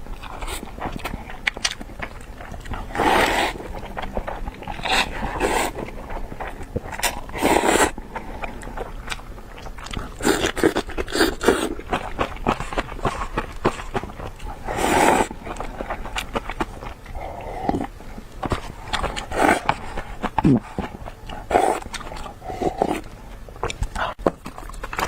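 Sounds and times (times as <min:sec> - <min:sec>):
biting and chewing: 0:00.0 - 0:25.0.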